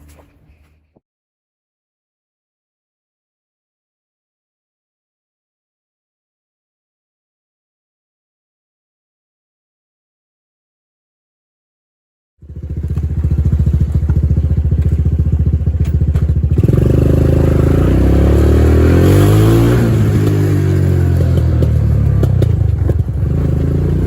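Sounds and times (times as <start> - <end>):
atv engine idling and revving: 12.4 - 24.0.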